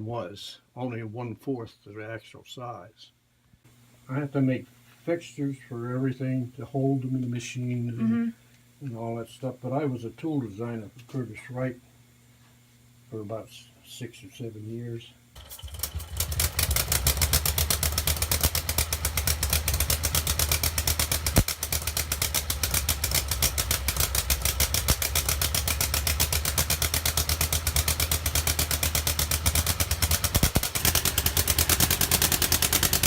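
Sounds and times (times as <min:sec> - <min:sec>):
model plane engine running: 0:15.4 - 0:33.0.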